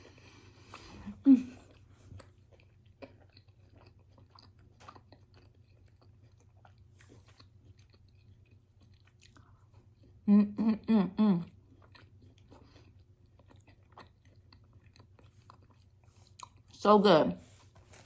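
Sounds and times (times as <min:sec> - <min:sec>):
chewing with wet mouth clicks: 0:01.6 - 0:10.2, 0:11.5 - 0:16.8.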